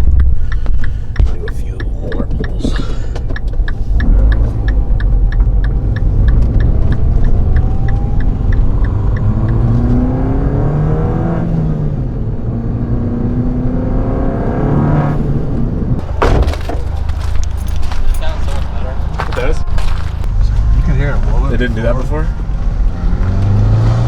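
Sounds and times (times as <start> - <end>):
even ticking: 0.0 - 10.1
car engine accelerating hard: 0.0 - 24.0.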